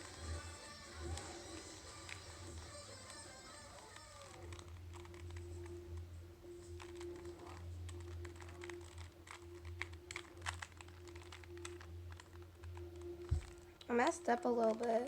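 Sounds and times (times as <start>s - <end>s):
puzzle cube clicking: 0.0s - 6.1s, 6.7s - 15.0s
low steady hum: 3.8s - 15.0s.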